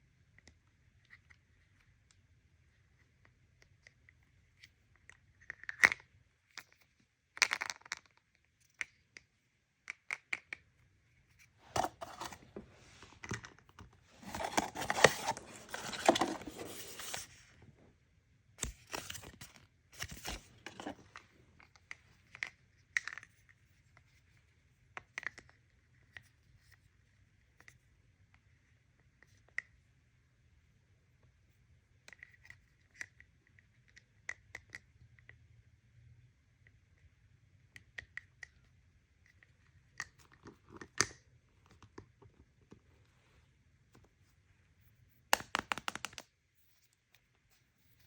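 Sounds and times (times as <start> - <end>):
packaging crinkling and tearing: 14.2 - 17.3.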